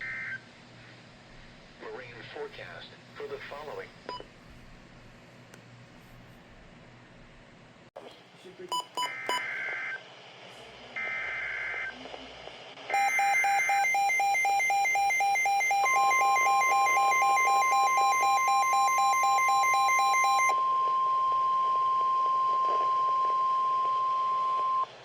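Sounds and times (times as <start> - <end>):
rapid electronic alarm beeping: 12.9 - 21.2
steady warning alarm tone: 12.9 - 21.6.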